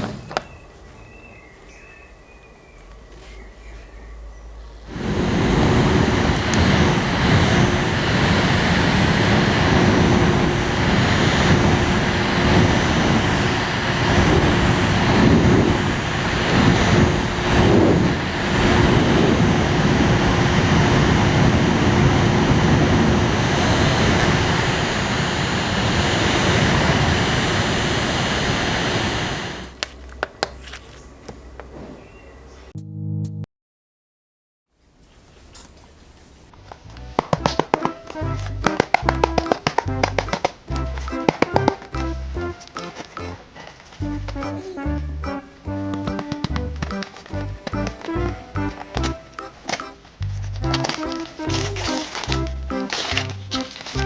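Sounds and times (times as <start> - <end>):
air conditioner fan blowing: 4.3 - 32.6.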